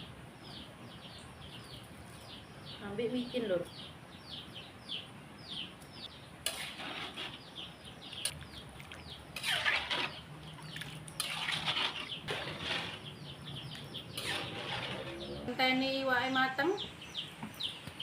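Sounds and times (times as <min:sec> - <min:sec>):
birds chirping: 0:00.0 - 0:18.0
scraping and rustling in kitchen: 0:06.4 - 0:07.5, 0:09.4 - 0:10.3, 0:11.2 - 0:13.1, 0:14.2 - 0:15.5.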